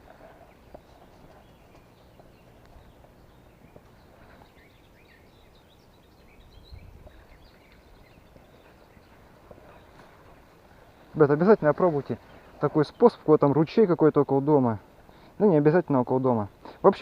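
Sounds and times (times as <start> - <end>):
bird chirps: 0.0 - 13.4.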